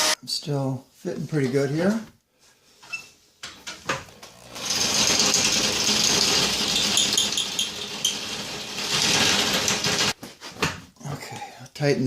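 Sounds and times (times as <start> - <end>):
electric drill grinding metal: 4.0 - 10.2.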